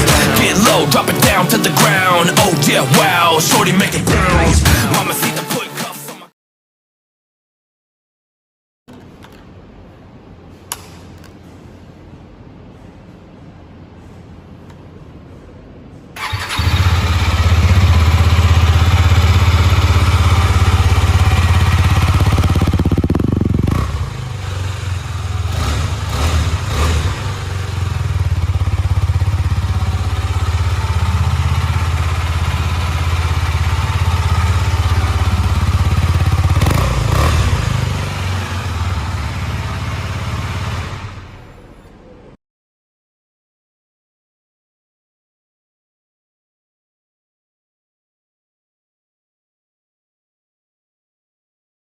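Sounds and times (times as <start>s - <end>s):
motorcycle engine revving: 16.2s - 41.5s.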